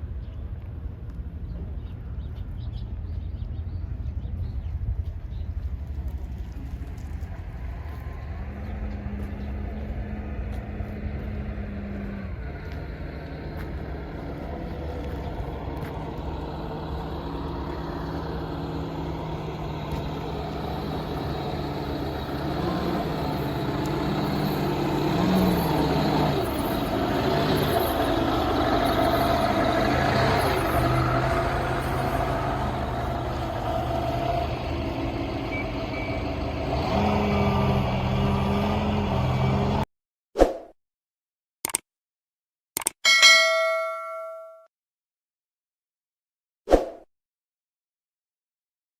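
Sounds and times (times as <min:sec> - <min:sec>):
large engine running: 0:03.4 - 0:39.8.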